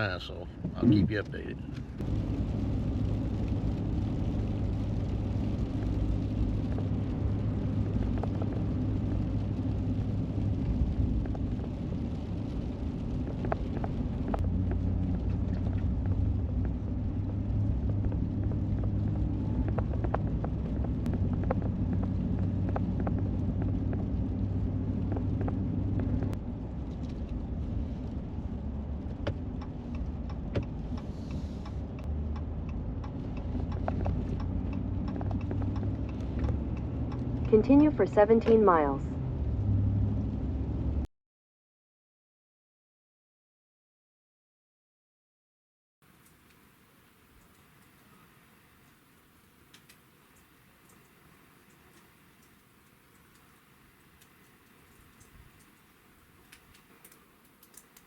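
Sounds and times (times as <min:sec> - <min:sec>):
truck engine and road rumble: 0:00.0 - 0:41.1, 0:46.0 - 0:58.0
light ticks and clicks: 0:29.2 - 0:38.6, 0:49.6 - 0:58.0.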